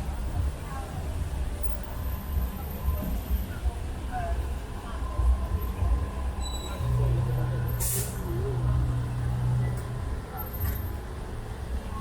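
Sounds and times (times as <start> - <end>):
large vehicle engine humming: 0.0 - 12.0
sharp hiss: 7.8 - 8.2.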